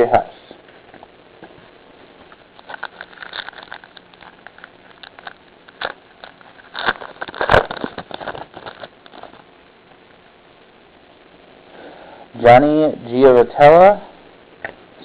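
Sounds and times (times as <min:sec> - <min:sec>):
card pack wrapper crinkling: 0:02.3 - 0:09.5
wrapper tearing snap: 0:02.6 - 0:09.4.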